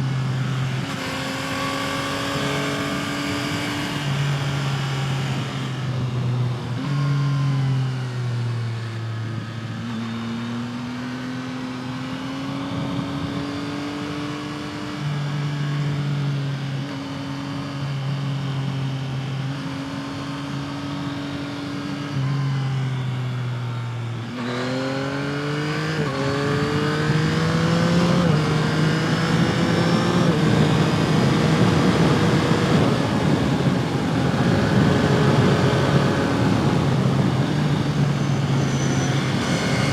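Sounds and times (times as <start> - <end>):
motorcycle engine revving: 0.0 - 39.9
wind noise: 12.5 - 14.6, 25.6 - 39.9.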